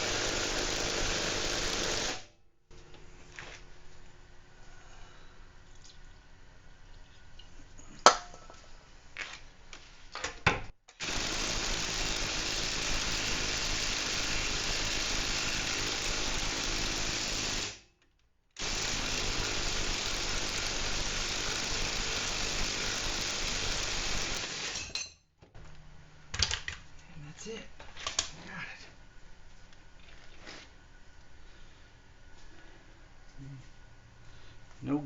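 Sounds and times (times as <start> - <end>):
cordless impact wrench running: 0.0 - 2.2, 11.0 - 17.8, 18.6 - 24.9.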